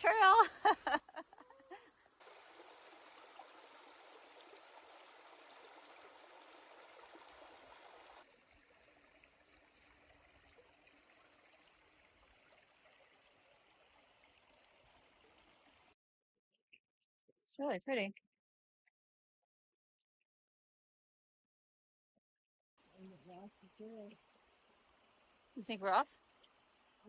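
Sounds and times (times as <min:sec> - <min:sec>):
small creek flowing: 0:00.0 - 0:16.0, 0:22.8 - 0:27.0.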